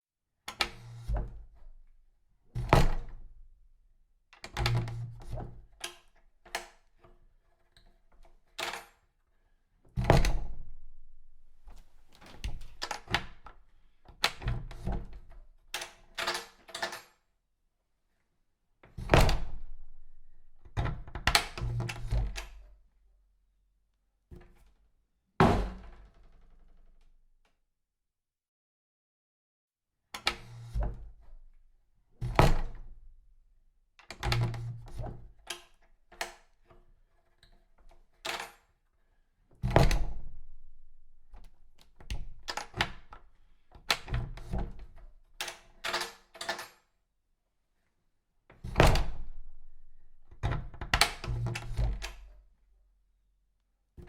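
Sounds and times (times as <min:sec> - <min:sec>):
door thudding shut: 0:25.4 - 0:26.3.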